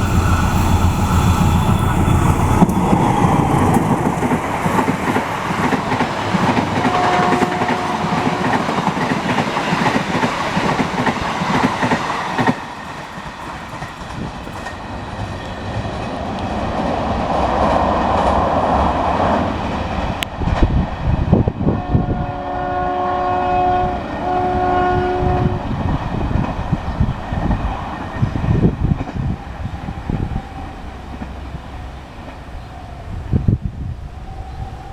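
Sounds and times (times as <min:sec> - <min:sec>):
train wheels clacking: 0:00.0 - 0:21.5
locomotive horn: 0:04.6 - 0:09.0, 0:21.6 - 0:25.8.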